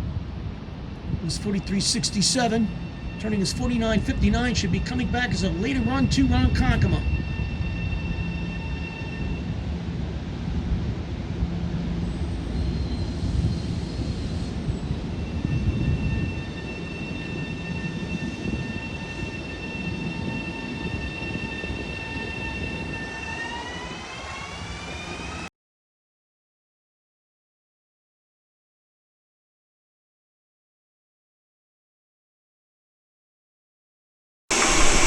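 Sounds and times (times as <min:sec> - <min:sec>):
electric train rumble: 0:00.0 - 0:25.5, 0:34.5 - 0:35.0
train whine: 0:00.0 - 0:25.5, 0:34.5 - 0:35.0.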